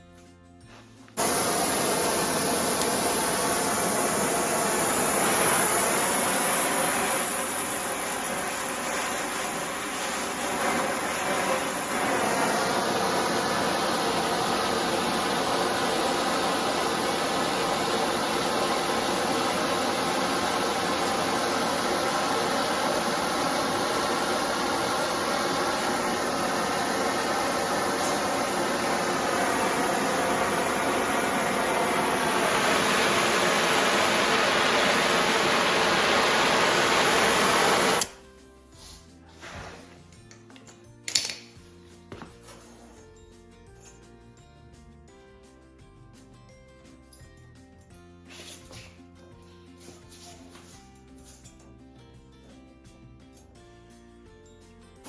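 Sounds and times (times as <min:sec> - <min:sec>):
torch flame hissing: 0:01.2 - 0:38.2.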